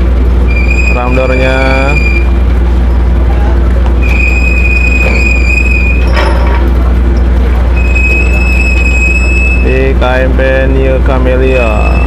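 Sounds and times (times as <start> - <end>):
low drone of machinery: 0.0 - 12.0
winch mechanism squealing: 0.2 - 3.2, 4.0 - 10.0, 11.5 - 12.0.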